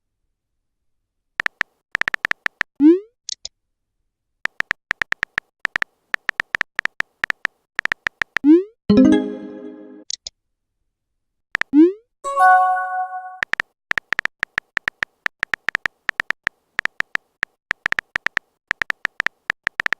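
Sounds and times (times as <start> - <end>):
phone keyboard typing clicks: 1.4 - 2.7, 4.5 - 8.4, 13.4 - 19.9
notification tone: 8.9 - 10.0, 12.3 - 13.4.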